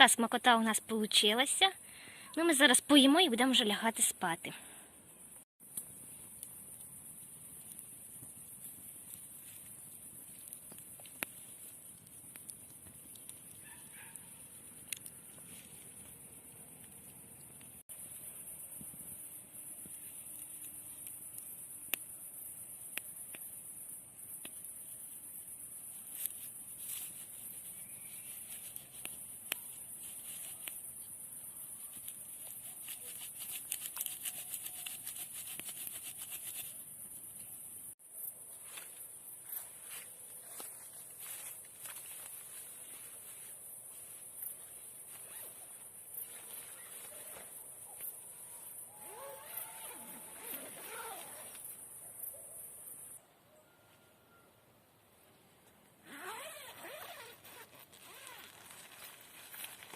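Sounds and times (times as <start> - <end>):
crickets trilling: 5.2 - 53.2, 56.1 - 59.9
insects chorus: 5.2 - 53.2
small rustles and clicks: 56.8 - 59.9.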